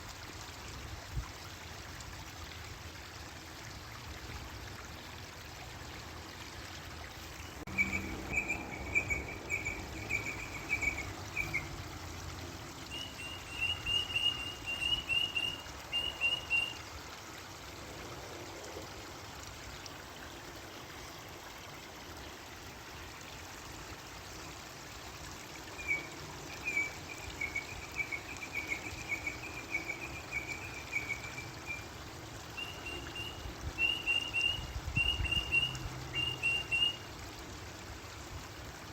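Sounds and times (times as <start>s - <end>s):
running water: 0.0s - 38.9s
bird chirping: 7.4s - 11.8s, 12.9s - 16.8s, 25.8s - 31.8s.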